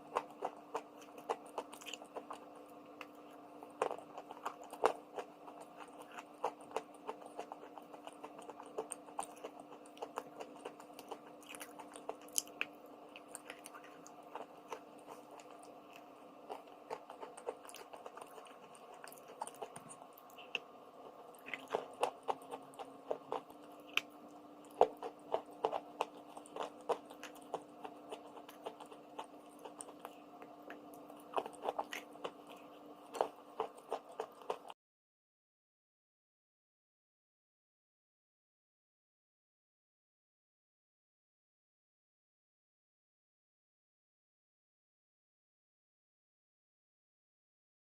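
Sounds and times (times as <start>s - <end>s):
chalk crunching while chewing: 0.0s - 34.8s
faint steady hum: 0.0s - 34.8s.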